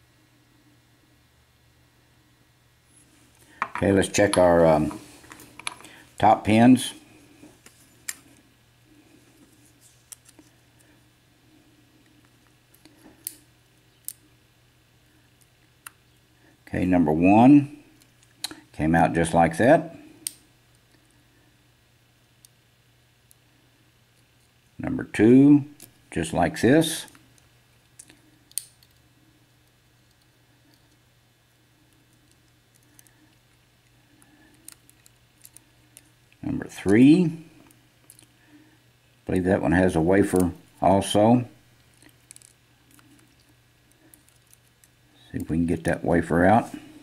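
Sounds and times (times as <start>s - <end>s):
low steady hum: 0.0s - 47.0s
small metal clicks: 27.3s - 29.0s, 34.5s - 36.2s, 41.9s - 45.0s.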